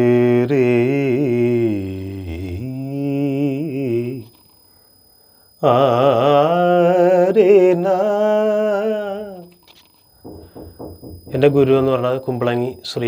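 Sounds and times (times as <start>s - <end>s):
person singing with vibrato: 5.6s - 9.6s.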